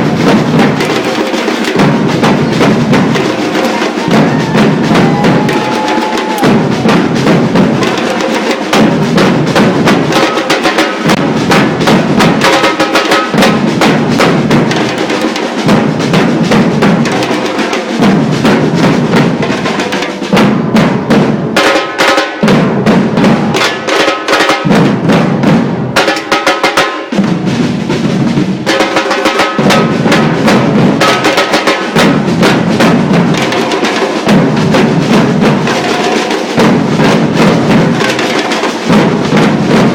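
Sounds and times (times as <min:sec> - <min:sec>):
snare drums rhythm: 0:00.0 - 0:39.9
deep bass drums: 0:04.0 - 0:07.8.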